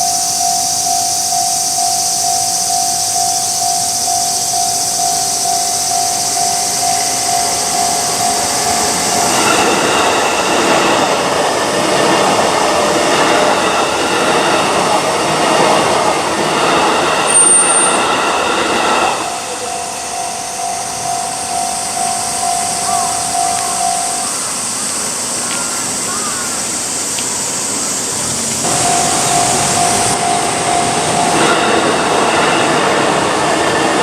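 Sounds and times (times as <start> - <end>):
level crossing alarm pulsing: 0.0 - 26.0, 27.6 - 34.0
train motor whine: 0.0 - 26.0, 26.7 - 34.0
train wheels rumbling: 0.0 - 34.0
wheel squeak: 16.5 - 24.3.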